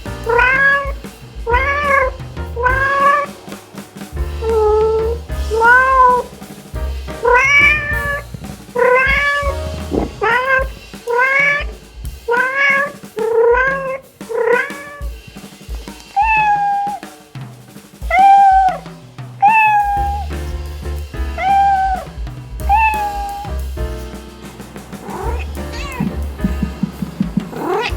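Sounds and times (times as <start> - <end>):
cat meowing: 0.3 - 3.3, 4.5 - 6.3, 7.2 - 8.2, 8.8 - 11.7, 12.3 - 15.1, 16.2 - 17.0, 18.1 - 18.8, 19.4 - 20.3, 21.4 - 23.6, 25.0 - 27.9.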